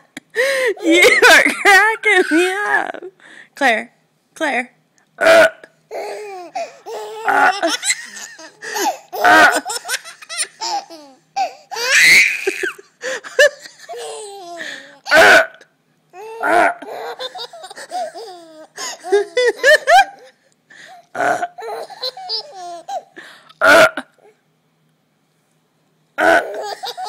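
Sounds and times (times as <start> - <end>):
baby laughing: 0.8 - 2.5, 5.9 - 15.2, 16.2 - 20.4, 21.5 - 23.2, 26.3 - 27.0
woman fake burping: 5.2 - 5.7, 9.2 - 9.6, 16.4 - 16.8, 21.1 - 21.6, 23.6 - 24.2, 26.2 - 26.6.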